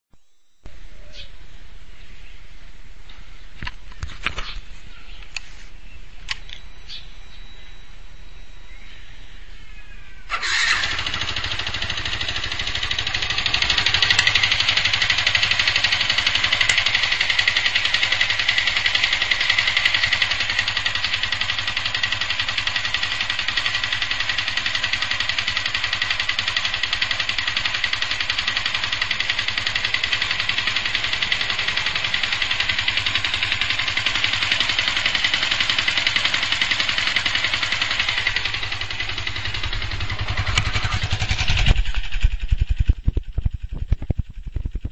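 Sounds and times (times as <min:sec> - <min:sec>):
motorcycle engine clattering: 0:10.4 - 0:44.9.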